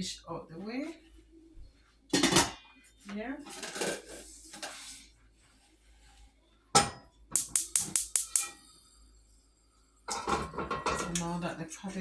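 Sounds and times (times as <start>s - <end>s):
metal pot clanging on stove: 2.1s - 2.6s, 6.8s - 8.6s, 10.1s - 11.4s.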